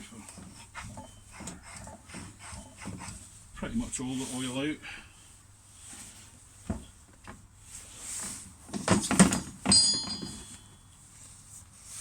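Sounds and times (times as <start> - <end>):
knocks on metal parts: 8.8 - 10.6
metal clink ringing: 9.7 - 10.9.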